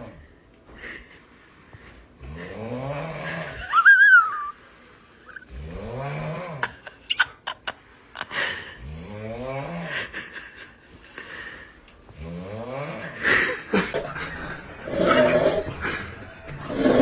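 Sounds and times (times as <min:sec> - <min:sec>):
person snoring: 0:00.0 - 0:00.3, 0:02.2 - 0:03.8, 0:05.4 - 0:06.8, 0:08.2 - 0:10.2, 0:11.2 - 0:17.0.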